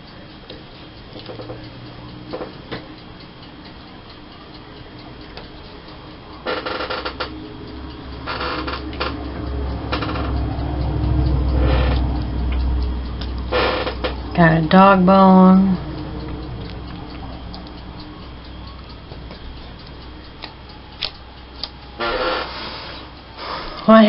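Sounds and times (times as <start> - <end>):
light clicks and ticks: 0.1 - 24.0
low rumble: 6.3 - 23.4.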